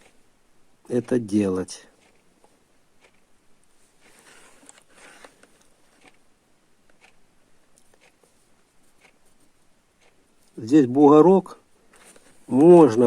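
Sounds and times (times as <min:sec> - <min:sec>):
soft handling rustles: 0:01.0 - 0:06.2, 0:07.7 - 0:10.6, 0:11.6 - 0:13.0.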